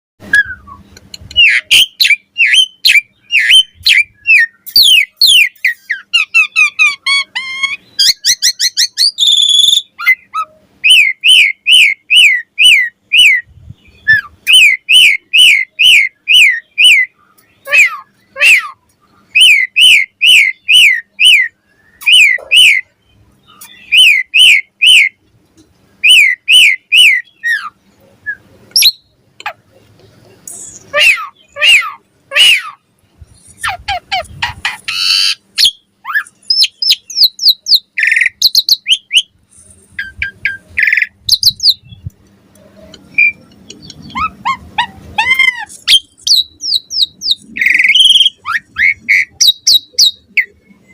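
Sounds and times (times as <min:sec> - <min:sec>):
bird singing whistled notes: 0:00.2 - 0:18.5, 0:19.3 - 0:25.2, 0:26.0 - 0:29.2, 0:34.9 - 0:39.4, 0:40.0 - 0:42.1, 0:43.1 - 0:44.4, 0:45.2 - 0:50.9
bird twittering: 0:00.2 - 0:25.2, 0:26.0 - 0:29.6, 0:30.4 - 0:50.9.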